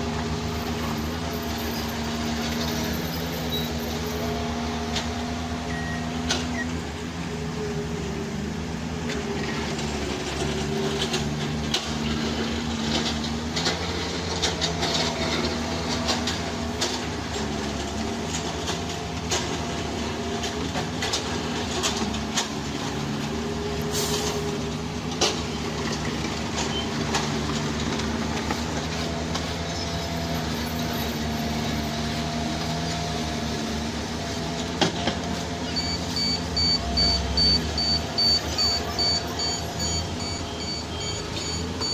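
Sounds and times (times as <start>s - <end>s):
diesel machinery running: 0.0s - 41.9s
backup alarm beeping: 35.7s - 41.9s.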